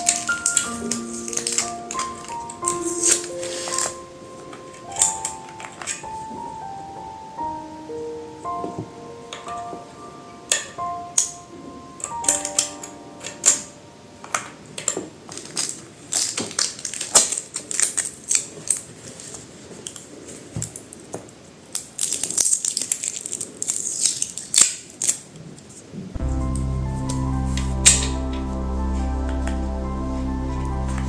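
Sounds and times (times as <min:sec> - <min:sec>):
plastic parts clicking: 0:00.0 - 0:06.1, 0:12.0 - 0:20.0, 0:21.7 - 0:25.3
soft background music: 0:00.0 - 0:14.9, 0:26.2 - 0:31.0.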